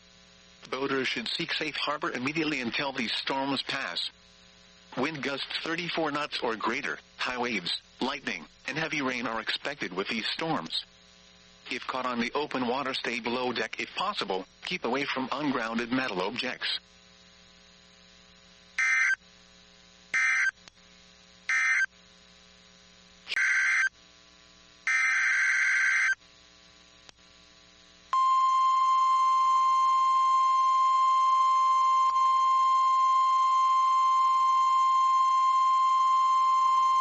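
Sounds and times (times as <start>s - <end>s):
buzzy digital data bursts: 18.8s - 19.3s, 20.1s - 20.6s, 21.5s - 21.9s.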